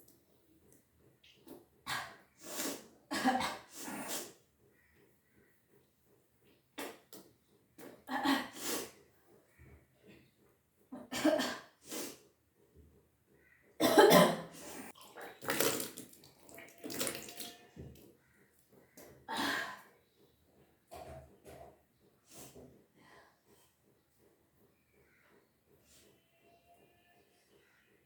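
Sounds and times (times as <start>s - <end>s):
person retching and gagging: 15.0s - 17.6s
water gushing and splashing: 15.0s - 17.7s.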